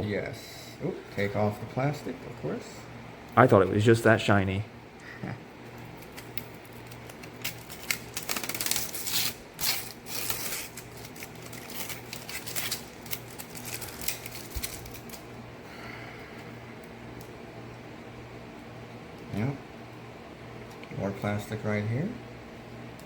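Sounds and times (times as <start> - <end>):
plastic film peeling: 5.9 - 15.3.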